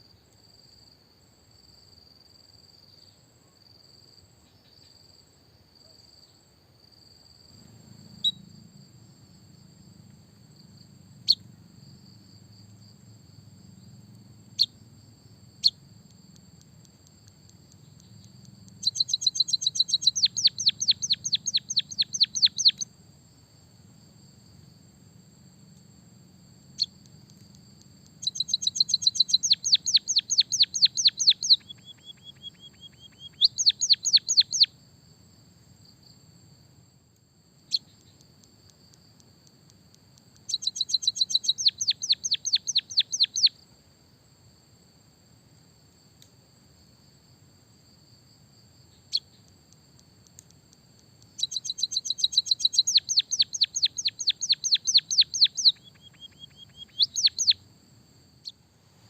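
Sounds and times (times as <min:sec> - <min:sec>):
bird singing: 0:07.6 - 0:08.7, 0:10.8 - 0:12.2, 0:13.7 - 0:14.9, 0:15.6 - 0:15.9, 0:17.3 - 0:22.9, 0:26.7 - 0:34.7, 0:37.7 - 0:38.2, 0:40.4 - 0:43.6, 0:51.4 - 0:57.6.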